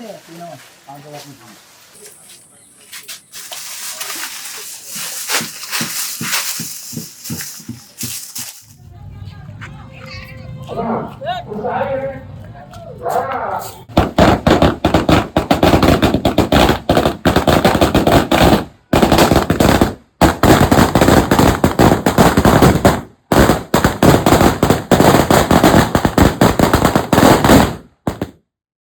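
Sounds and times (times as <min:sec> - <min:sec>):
firecrackers bursting: 0:00.8 - 0:08.8, 0:13.8 - 0:28.4.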